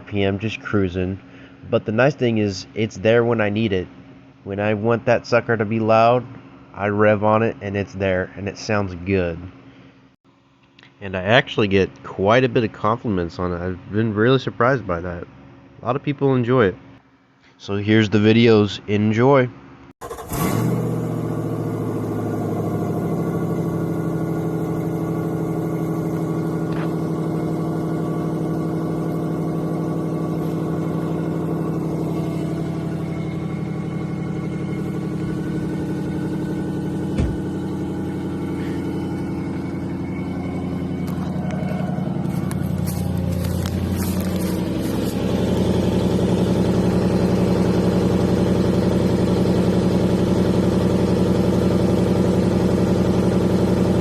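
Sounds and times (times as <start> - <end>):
car engine idling: 20.0 - 54.0.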